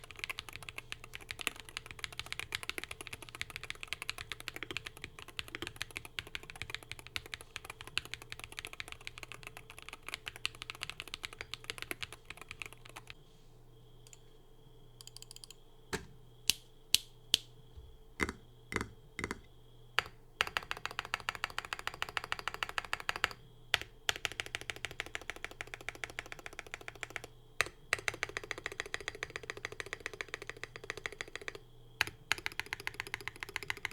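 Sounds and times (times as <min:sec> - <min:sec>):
fast keyboard typing: 0:00.0 - 0:13.2, 0:18.8 - 0:33.9.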